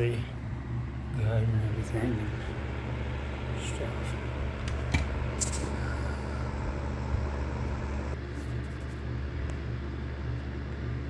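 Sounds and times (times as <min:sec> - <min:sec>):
heating unit humming: 0:00.0 - 0:11.0.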